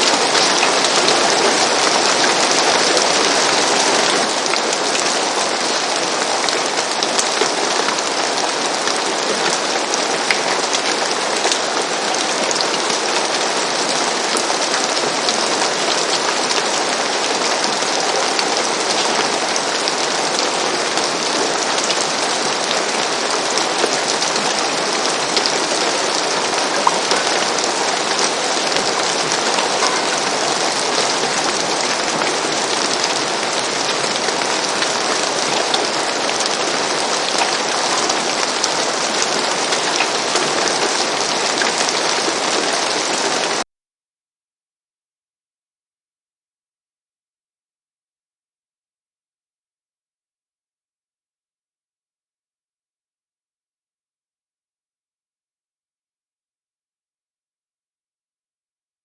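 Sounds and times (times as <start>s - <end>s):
rain on a roof: 0.0s - 43.7s.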